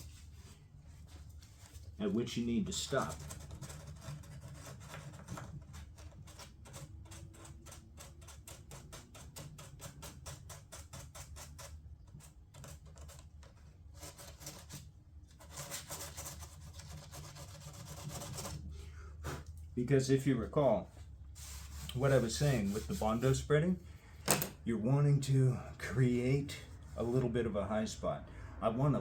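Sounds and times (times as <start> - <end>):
hand sanding body filler: 21.4 - 23.4.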